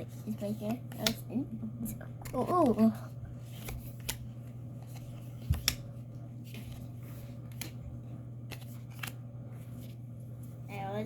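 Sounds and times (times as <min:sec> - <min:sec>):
steady low hum: 0:00.0 - 0:11.0
cards and wrappers clicking and rustling: 0:08.5 - 0:09.2.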